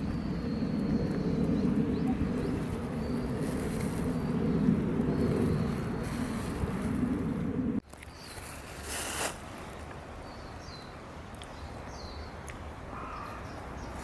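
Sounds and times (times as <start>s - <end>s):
low rumble: 0.0s - 7.8s.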